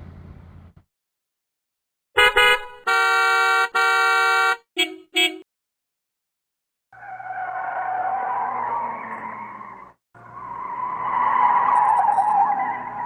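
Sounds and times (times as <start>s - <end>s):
car tyres squealing: 7.0s - 13.0s.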